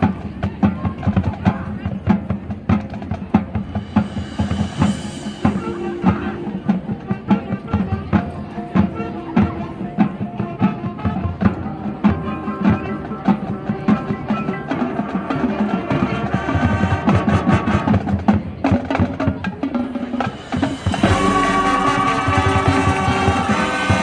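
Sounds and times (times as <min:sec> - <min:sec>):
rapid percussion strikes: 0:00.0 - 0:10.4, 0:12.9 - 0:24.0
marching band playing: 0:00.1 - 0:24.0.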